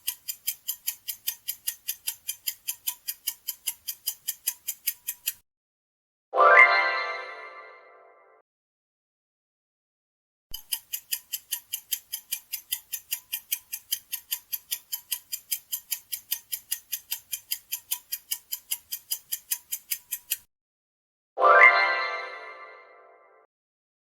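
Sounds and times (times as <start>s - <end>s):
clock ticking: 0.0s - 5.4s, 10.6s - 20.5s.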